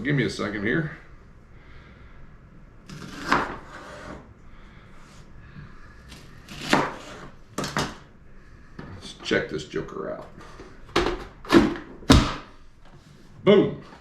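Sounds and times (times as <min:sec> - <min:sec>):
scrape on kitchen counter: 0:03.3 - 0:04.3, 0:06.8 - 0:07.3.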